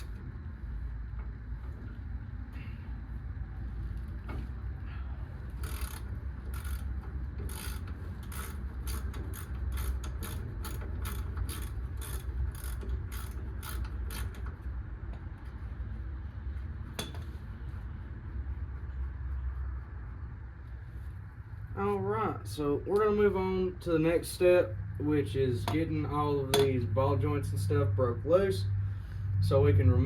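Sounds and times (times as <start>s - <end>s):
steady low hum: 0.0s - 30.0s
ratchet wrench clicking: 5.6s - 14.6s.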